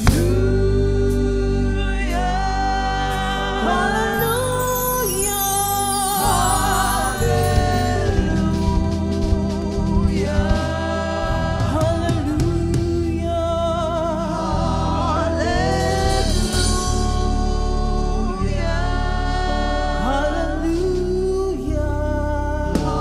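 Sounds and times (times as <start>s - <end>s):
bass and keyboard accompaniment: 0.0s - 23.0s
person singing long notes: 3.0s - 10.5s.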